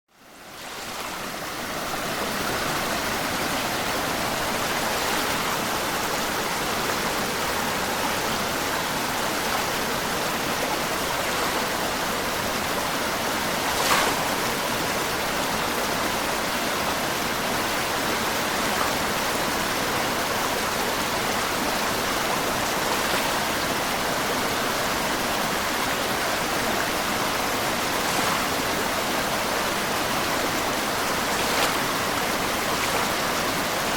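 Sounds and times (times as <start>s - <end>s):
small waves lapping against stone: 13.5s - 14.9s, 31.1s - 33.3s
water splash: 13.5s - 15.2s, 27.7s - 29.7s, 31.0s - 33.6s.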